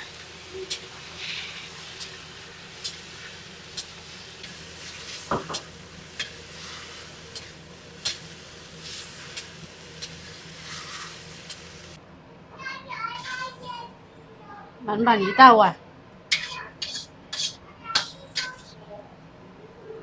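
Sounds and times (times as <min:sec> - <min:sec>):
wok sizzling: 0:00.0 - 0:12.0, 0:13.2 - 0:13.9, 0:16.3 - 0:18.7
spatula clicking against pan: 0:16.3 - 0:18.7.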